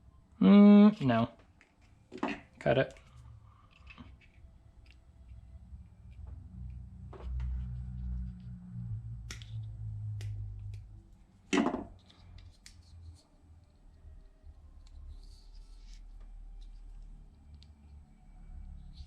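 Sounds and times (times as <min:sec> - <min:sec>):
low hum: 0:03.0 - 0:11.5.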